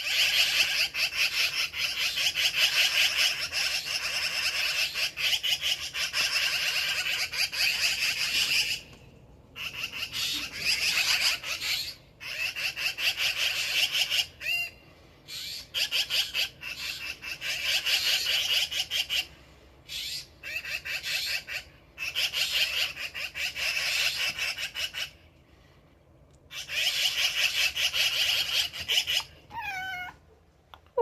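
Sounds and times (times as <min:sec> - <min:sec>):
magpies chattering: 0:00.0 - 0:08.9, 0:09.5 - 0:25.2, 0:26.5 - 0:30.1.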